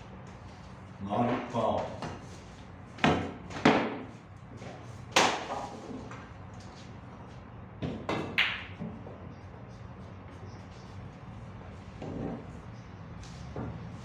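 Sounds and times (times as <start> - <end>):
snooker balls clacking: 7.8 - 9.3, 12.0 - 12.6.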